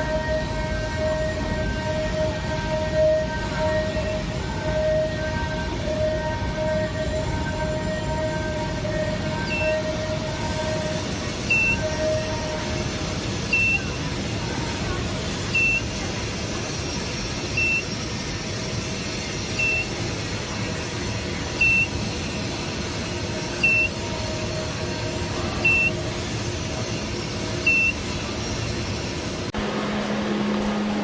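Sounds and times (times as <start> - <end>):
steady mechanical hum: 0.0 - 31.0
short high electronic beeps: 11.4 - 12.2, 13.5 - 14.0, 15.5 - 16.0, 17.6 - 17.9, 19.6 - 20.0, 21.6 - 22.1, 23.6 - 24.0, 25.6 - 26.0, 27.6 - 28.1, 29.6 - 31.0.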